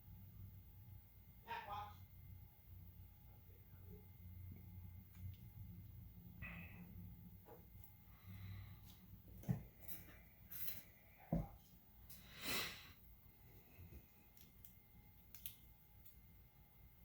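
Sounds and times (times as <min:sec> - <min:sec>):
light clicks of small parts: 0:14.3 - 0:16.2.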